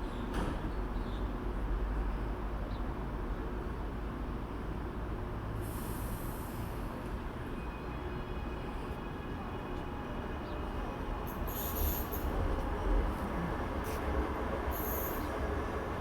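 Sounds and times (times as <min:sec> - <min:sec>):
train rumbling: 0:06.2 - 0:16.0.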